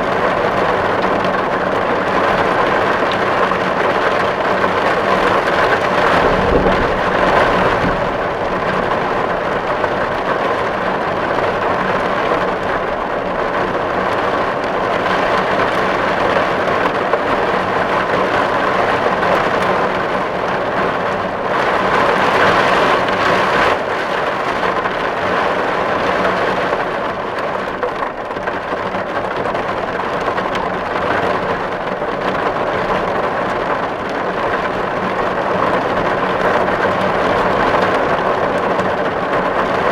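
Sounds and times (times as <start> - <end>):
heavy rain on a tin roof: 0.0 - 39.9
brief low rumble: 6.0 - 9.5.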